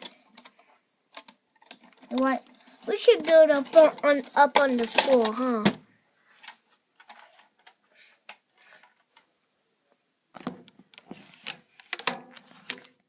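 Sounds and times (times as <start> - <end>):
plastic bricks clicking: 3.0 - 5.4.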